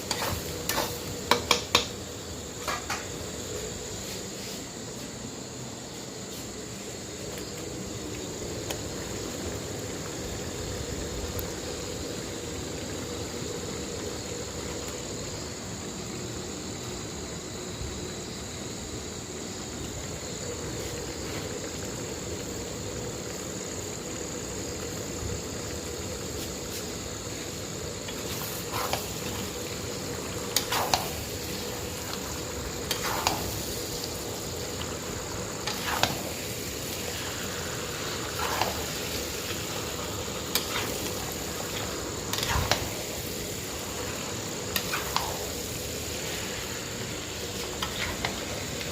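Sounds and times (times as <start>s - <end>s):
chicken sizzling in a pot: 0.0s - 48.9s.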